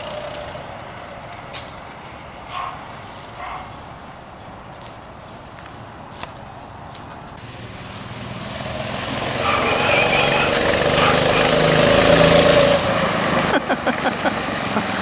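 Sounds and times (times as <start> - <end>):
small gasoline engine passing: 0.0 - 3.7, 7.4 - 15.0.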